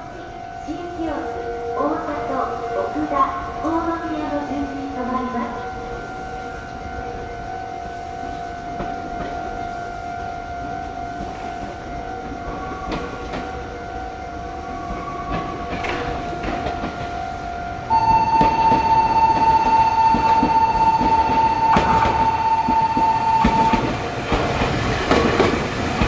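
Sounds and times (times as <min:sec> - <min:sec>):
electric train moving slowly: 0:00.0 - 0:26.0
level-crossing alarm ringing: 0:00.0 - 0:26.0
wheels clicking over rail joints: 0:06.7 - 0:26.0
loud high tone: 0:17.9 - 0:24.0.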